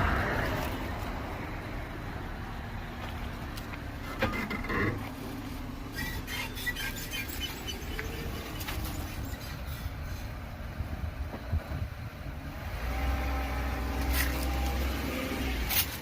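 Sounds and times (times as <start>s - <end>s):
car engine and road noise: 0.0s - 16.0s
pitched squeak from car: 5.9s - 10.3s.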